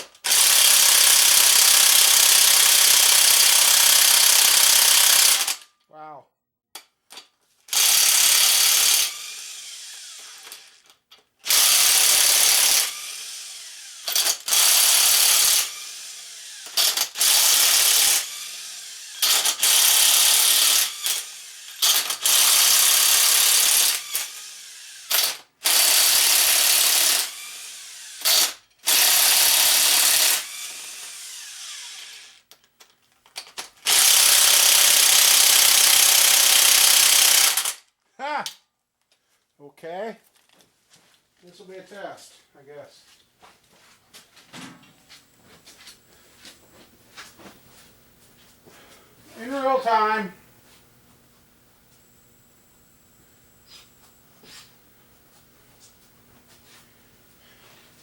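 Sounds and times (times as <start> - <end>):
impact wrench hammering: 11.5 - 24.4, 33.9 - 37.8.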